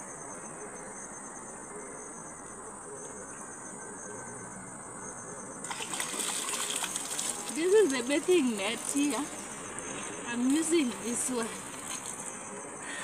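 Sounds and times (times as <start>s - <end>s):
insects chirring: 0.0s - 13.0s
water splashing: 5.6s - 9.5s, 10.5s - 12.3s.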